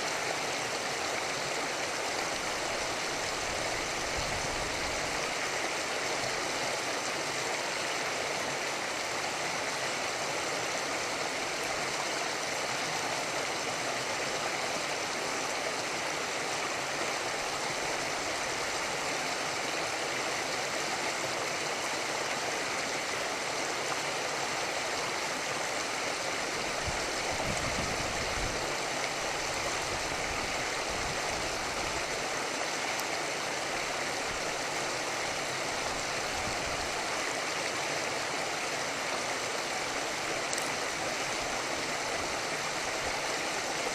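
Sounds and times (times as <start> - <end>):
river water rushing: 0.0 - 43.9.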